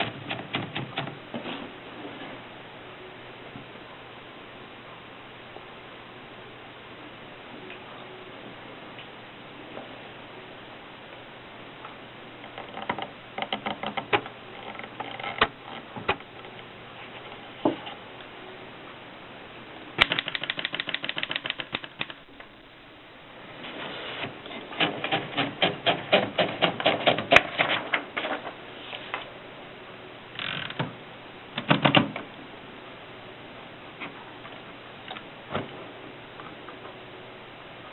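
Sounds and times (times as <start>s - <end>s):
typewriter keystrokes: 0.0s - 1.2s, 20.0s - 22.2s, 24.8s - 27.8s
typewriter rattle: 0.0s - 1.2s, 20.0s - 22.2s, 24.8s - 28.4s.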